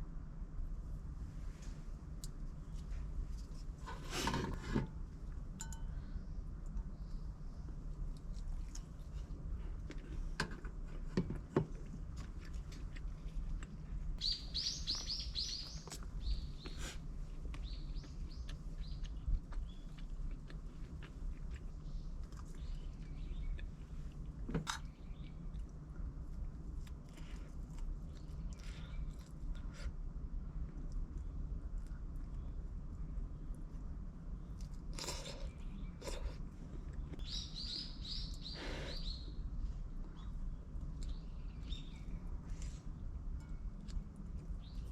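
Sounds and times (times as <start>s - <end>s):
low background hum: 0.0s - 44.9s
small birds chirping: 5.9s - 9.2s, 12.4s - 25.9s, 27.2s - 29.8s, 34.3s - 44.9s.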